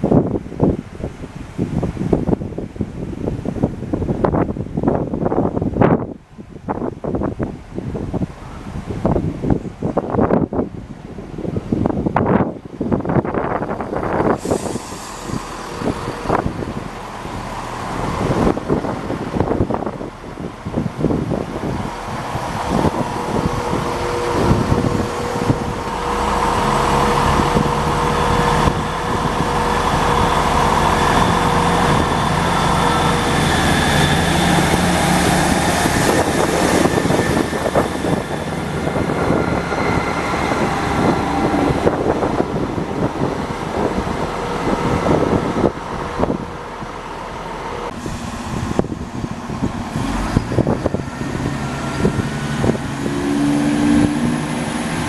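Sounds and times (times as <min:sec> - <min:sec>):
large vehicle engine hum: 0:00.0 - 0:55.0
high whine: 0:14.0 - 0:55.0.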